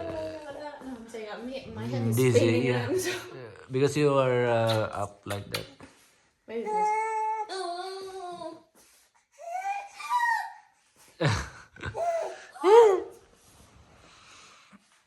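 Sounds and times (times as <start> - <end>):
infant crying and whimpering: 0.0 - 0.6, 9.4 - 10.7, 11.8 - 13.2.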